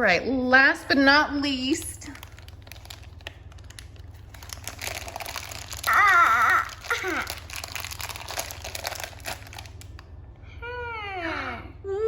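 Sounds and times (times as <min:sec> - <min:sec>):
plastic packaging crinkling: 0:01.8 - 0:10.1
wavering voice hum: 0:10.4 - 0:12.0.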